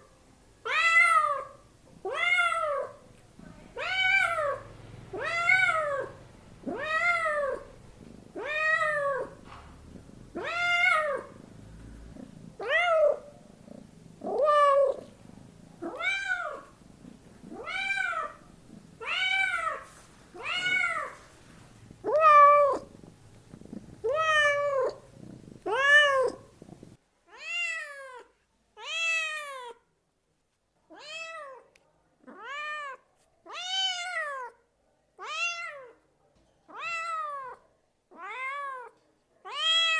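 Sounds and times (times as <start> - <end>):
cat meowing: 3.7 - 11.5, 12.6 - 15.2, 15.8 - 16.8, 17.4 - 29.8, 30.9 - 31.6, 32.3 - 34.5, 35.2 - 36.0, 36.7 - 39.9.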